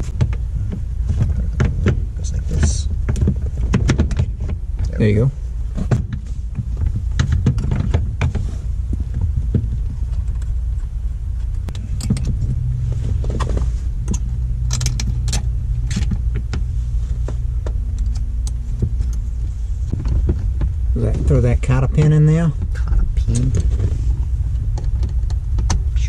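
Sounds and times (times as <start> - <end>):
steady low rumble: 0.0 - 26.0
metal parts clicking and clinking: 14.1 - 16.2.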